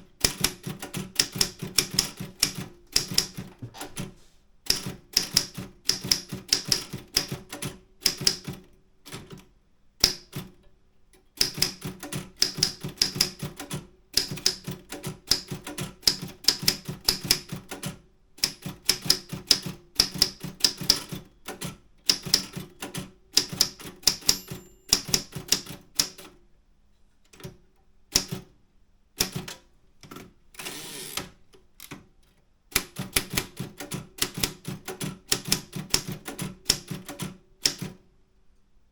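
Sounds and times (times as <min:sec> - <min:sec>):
typewriter keys clacking: 0:23.4 - 0:26.1
typewriter rasp: 0:30.6 - 0:31.4.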